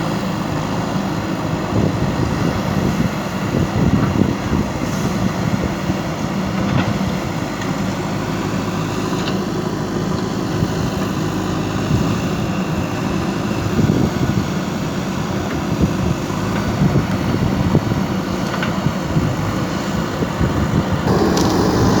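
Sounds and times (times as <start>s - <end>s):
backhoe diesel engine running: 0.0s - 22.0s.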